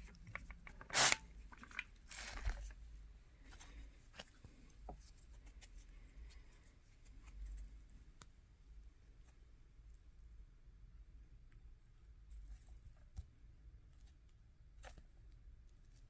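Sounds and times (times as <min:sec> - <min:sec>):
spray bottle squirts: 0:00.8 - 0:01.2.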